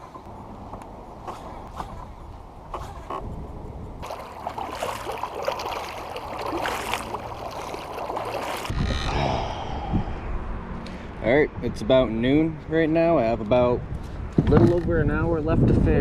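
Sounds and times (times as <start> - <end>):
water splashing along kayak: 4.0 - 8.8
low rumble: 8.7 - 11.9.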